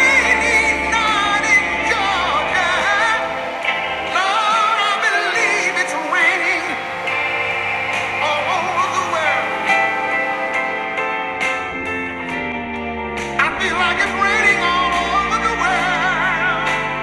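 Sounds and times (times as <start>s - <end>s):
slow ballad with singing: 0.0s - 17.0s.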